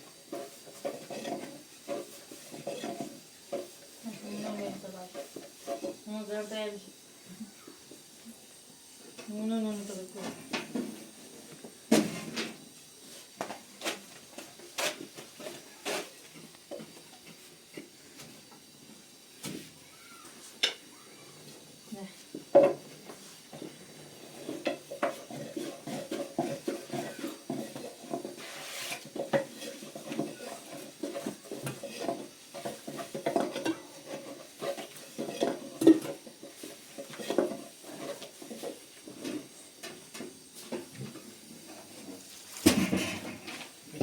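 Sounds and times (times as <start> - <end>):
metal kitchenware clattering: 0.3 - 4.5, 24.3 - 39.3.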